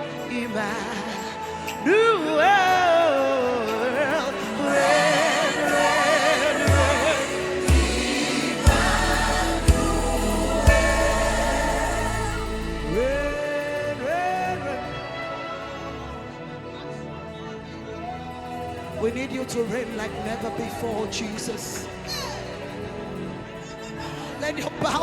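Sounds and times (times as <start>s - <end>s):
voices singing gospel melody: 0.0s - 17.2s
band playing: 4.8s - 13.6s
deep bass and drum beats: 6.7s - 13.4s.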